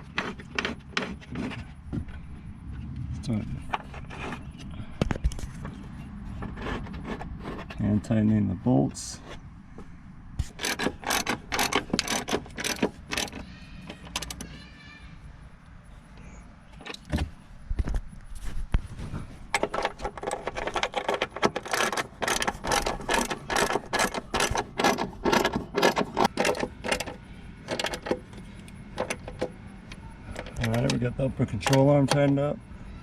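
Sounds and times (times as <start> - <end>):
ratchet wrench clicking: 10.5 - 14.4.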